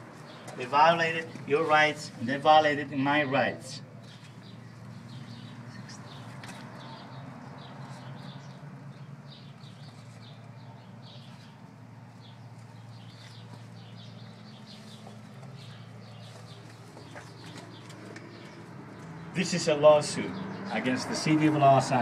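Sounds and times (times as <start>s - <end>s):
birds chirping: 0.0s - 22.0s.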